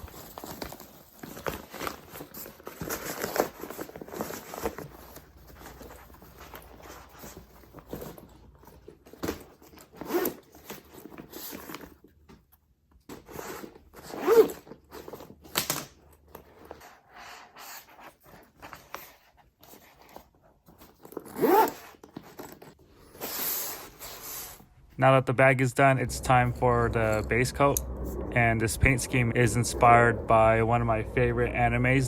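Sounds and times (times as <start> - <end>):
zipper zipping: 13.5 - 14.6, 21.2 - 22.0.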